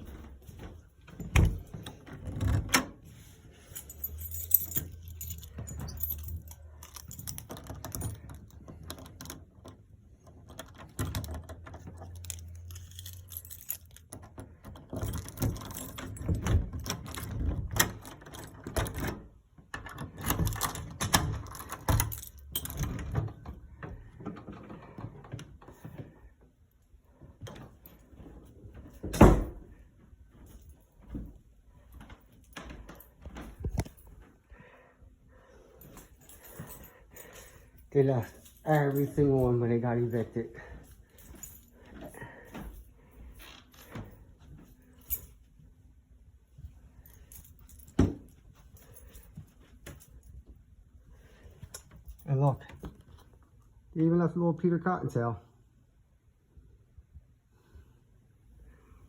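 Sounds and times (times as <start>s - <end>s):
objects clicking and rattling: 3.7s - 19.2s.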